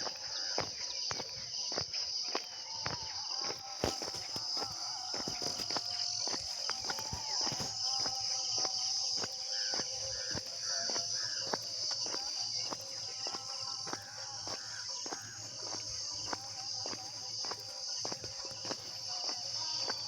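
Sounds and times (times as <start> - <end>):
bird calling: 0.0 - 20.0
footsteps on road: 0.0 - 20.0
insects droning: 0.0 - 20.0.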